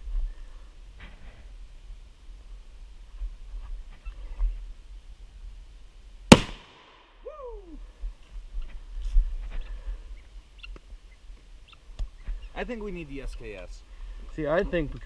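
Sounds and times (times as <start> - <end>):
shotgun shot with echo: 6.3 - 7.2.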